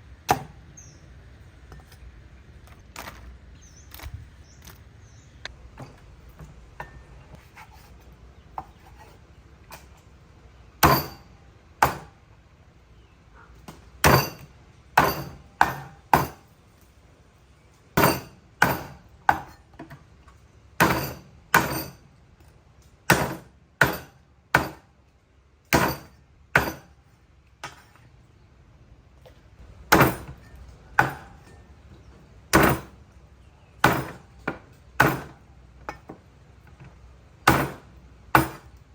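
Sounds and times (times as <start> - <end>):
blade chopping into wood: 10.8 - 12.1, 13.7 - 16.4, 18.0 - 19.5, 20.8 - 22.0, 23.1 - 24.8, 25.7 - 26.9, 32.5 - 32.9, 33.8 - 35.4, 37.4 - 38.7.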